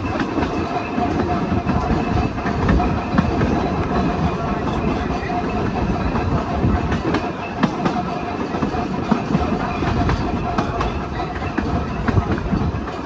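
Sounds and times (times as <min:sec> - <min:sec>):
streetcar rumbling along track: 0:00.0 - 0:13.0
wheels clicking over rail joints: 0:00.0 - 0:13.0.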